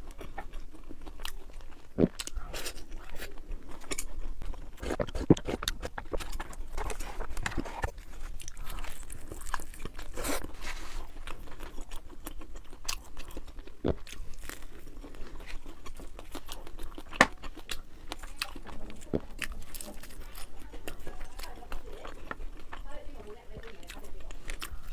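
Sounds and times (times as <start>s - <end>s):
chewing crunchy food: 0.0s - 24.9s.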